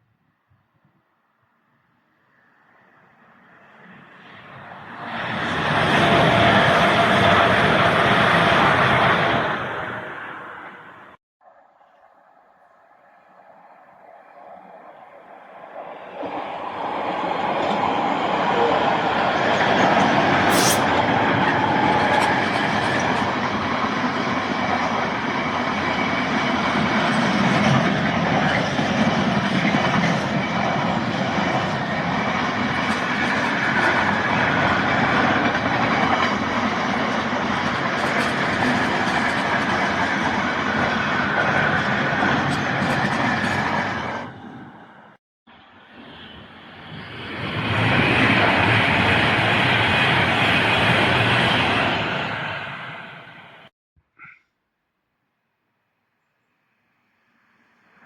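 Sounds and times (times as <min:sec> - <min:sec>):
train wheels rumbling on rails: 0:03.8 - 0:10.9, 0:14.4 - 0:45.2, 0:46.0 - 0:53.7.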